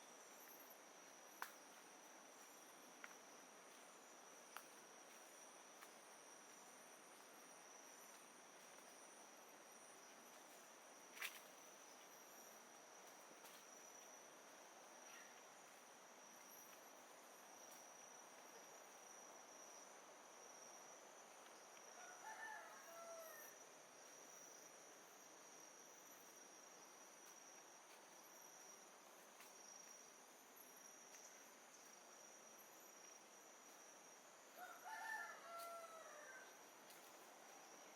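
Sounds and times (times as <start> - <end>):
high insect drone: 0.0 - 37.9
distant rooster crowing: 21.9 - 23.6, 34.5 - 36.7.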